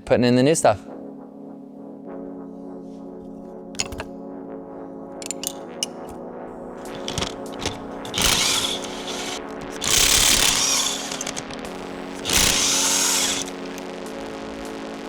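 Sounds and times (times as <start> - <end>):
background music: 0.0 - 15.0
power tool bursts: 3.8 - 4.1, 5.2 - 6.2, 6.8 - 13.8.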